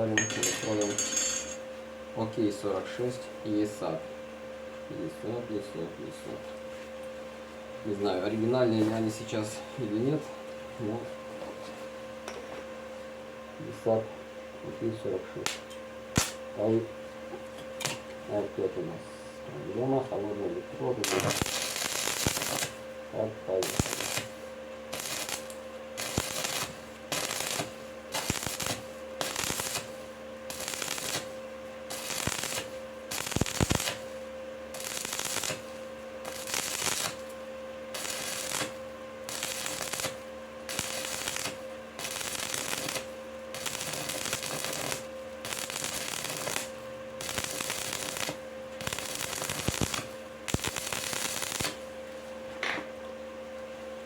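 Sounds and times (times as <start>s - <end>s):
welding arc crackling and sizzling: 0.0s - 1.6s, 15.4s - 16.8s, 17.4s - 18.7s, 20.8s - 52.0s
faint welding machine hum: 0.0s - 54.0s.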